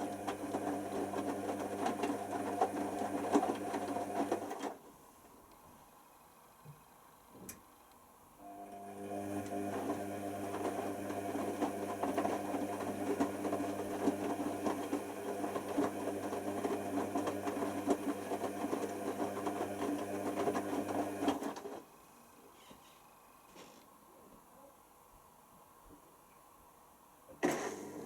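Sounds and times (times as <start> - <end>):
washer dryer motor humming: 0.0 - 4.8, 8.4 - 21.9.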